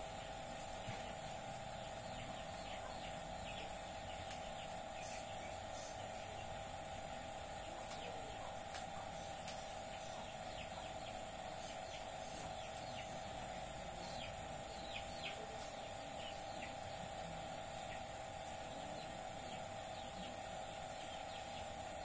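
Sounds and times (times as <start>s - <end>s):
birds chirping: 0.0s - 22.0s
steady hum: 0.0s - 22.0s.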